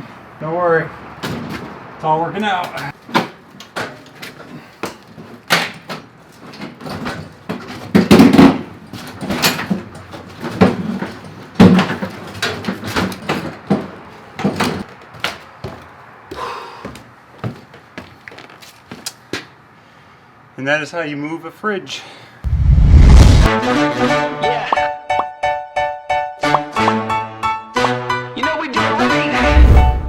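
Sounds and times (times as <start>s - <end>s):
refrigerator knocks and scrapes: 6.4s - 14.9s
heavy thumps: 22.5s - 23.5s.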